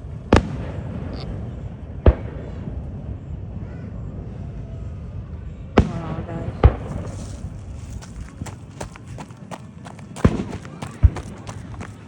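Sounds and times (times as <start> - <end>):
low rumble: 0.8 - 9.2.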